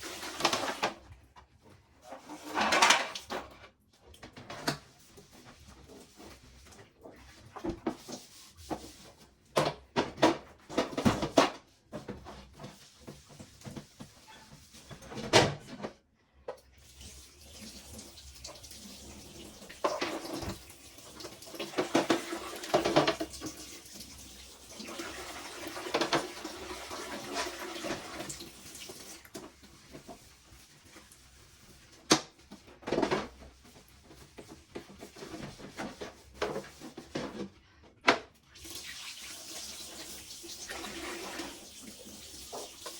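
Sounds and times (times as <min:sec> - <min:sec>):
knocks and clatters of parts: 0:02.5 - 0:03.6
tap water splashing in sink: 0:16.5 - 0:31.4, 0:38.1 - 0:42.9.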